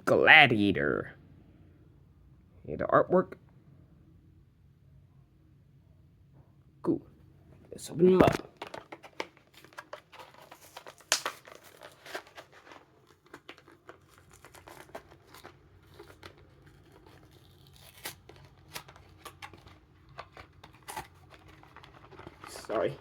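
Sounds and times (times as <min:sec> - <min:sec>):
plastic package being torn open: 0:08.2 - 0:23.0.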